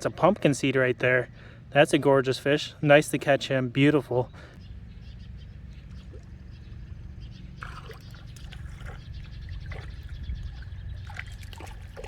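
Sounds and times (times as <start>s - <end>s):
water splashes and drips: 7.6s - 12.0s.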